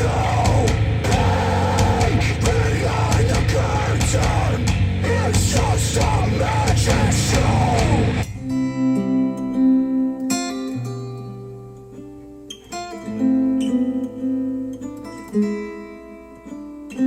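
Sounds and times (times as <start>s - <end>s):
rock music with heavy drums: 0.0s - 8.3s
strummed guitar music: 0.0s - 17.0s.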